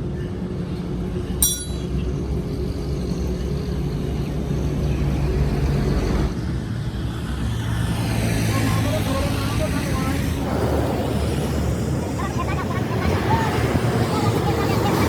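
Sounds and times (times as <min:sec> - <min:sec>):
engine running steadily: 0:00.0 - 0:15.0
metallic clink: 0:01.4 - 0:02.0.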